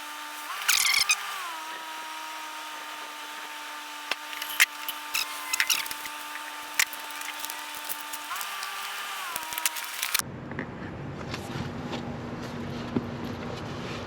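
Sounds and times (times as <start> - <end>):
steady mechanical hum: 0.0 - 14.0
tools clicking and clacking: 4.1 - 10.2.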